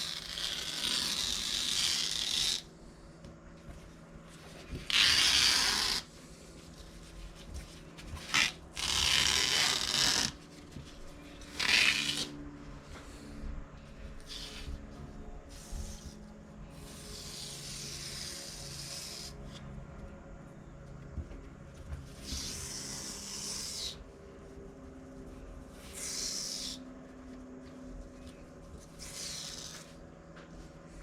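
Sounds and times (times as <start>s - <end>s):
cloth tearing from paper: 0.0s - 2.7s, 4.8s - 6.1s, 8.2s - 10.4s, 11.5s - 12.4s, 28.9s - 30.0s.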